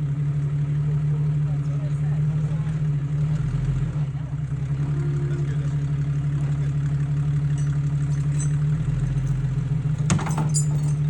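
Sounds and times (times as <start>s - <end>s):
car engine idling: 0.0s - 11.0s
sharp clatter: 7.5s - 11.0s.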